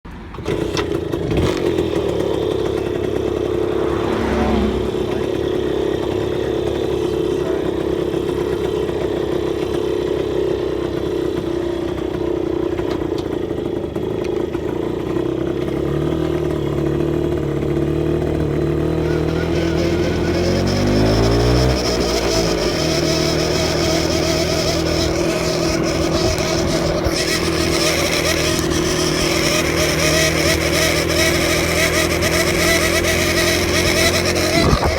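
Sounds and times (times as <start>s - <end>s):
two-stroke motorcycle engine running: 0.1s - 34.9s
high whistle from fuel tank: 19.0s - 22.6s.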